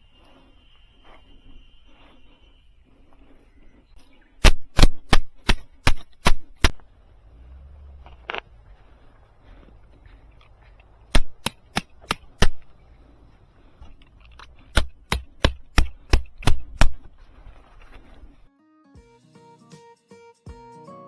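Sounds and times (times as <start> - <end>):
hammer striking tent pegs: 4.4 - 6.8, 11.1 - 12.7, 14.6 - 17.1.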